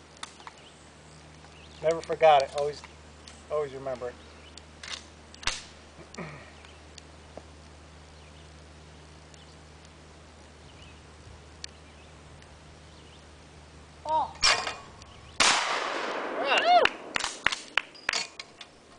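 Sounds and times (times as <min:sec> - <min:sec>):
low background hum: 0:00.0 - 0:18.9
person shouting: 0:14.1 - 0:14.4, 0:16.4 - 0:16.9
shotgun shot: 0:15.4 - 0:17.8.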